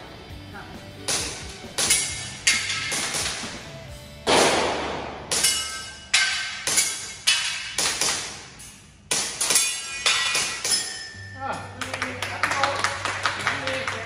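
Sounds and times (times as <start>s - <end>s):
airsoft pistol shots: 4.3s - 5.2s.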